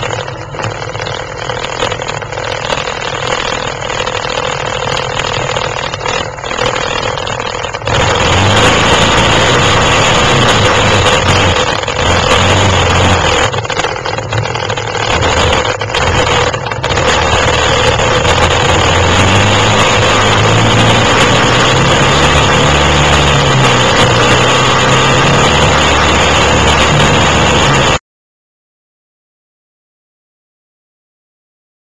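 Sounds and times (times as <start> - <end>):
quad engine running: 0.0 - 28.0
loud rushing noise: 7.9 - 13.6, 15.1 - 28.0.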